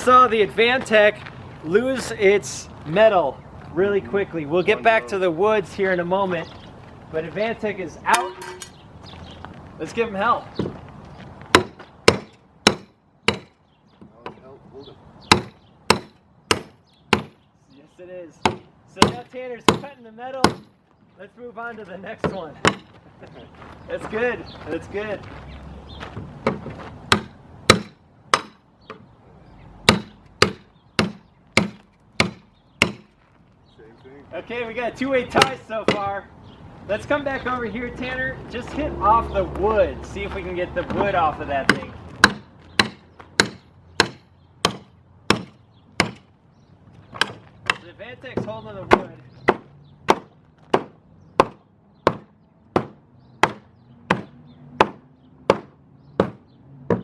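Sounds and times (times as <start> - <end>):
hand tool striking metal: 8.1 - 8.8.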